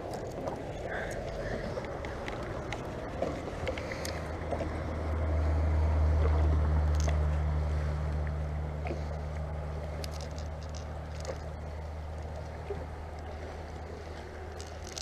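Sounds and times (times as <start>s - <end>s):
boat motor humming: 0.0s - 15.0s
light water sounds: 0.0s - 15.0s.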